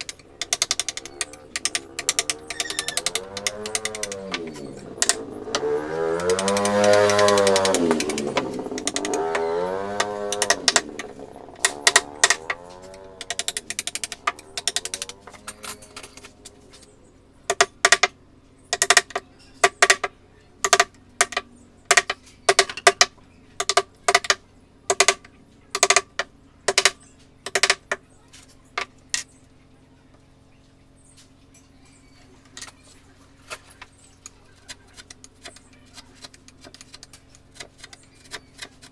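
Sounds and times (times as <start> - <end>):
mallet striking chisel: 0.0 - 15.5, 17.5 - 18.1, 18.8 - 25.2, 25.8 - 28.0.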